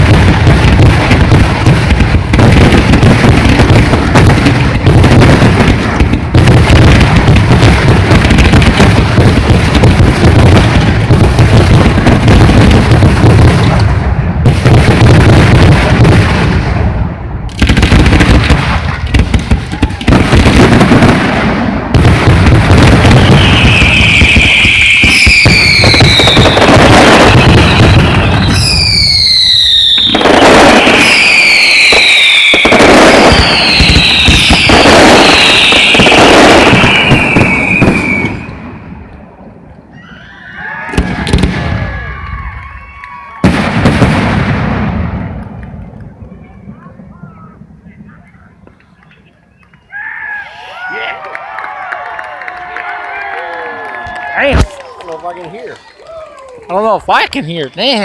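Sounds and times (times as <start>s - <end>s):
fireworks bangs: 0.0s - 58.0s
whistling fireworks: 0.0s - 58.0s.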